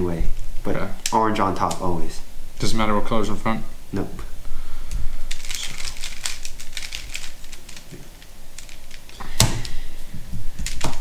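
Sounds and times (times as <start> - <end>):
puzzle cube plastic clicks: 10.6 - 11.0.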